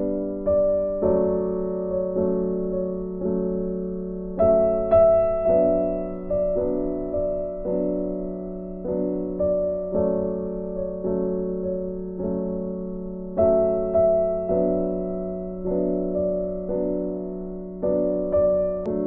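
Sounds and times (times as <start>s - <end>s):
soft electric piano chords: 0.0s - 19.0s.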